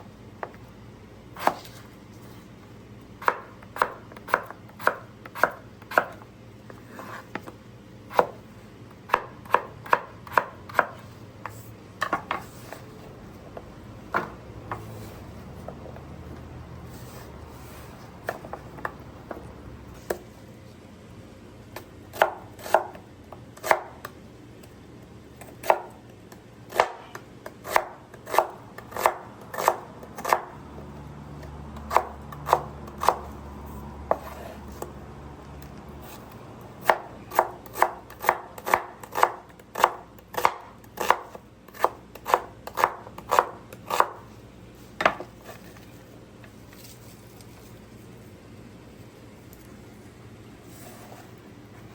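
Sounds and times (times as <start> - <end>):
knife chopping on cutting board: 1.4 - 1.9, 3.2 - 8.4, 9.0 - 12.9, 13.5 - 16.1, 18.2 - 20.2, 22.1 - 23.0, 23.6 - 24.2, 25.4 - 26.0, 26.7 - 30.6, 31.7 - 33.4, 34.1 - 35.0, 36.0 - 44.3, 45.0 - 45.8.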